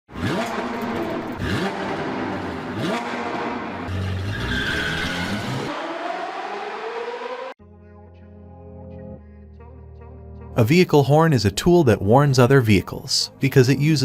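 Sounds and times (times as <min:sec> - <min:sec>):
car engine revving: 0:00.1 - 0:07.6
tyre squeal: 0:03.9 - 0:05.7.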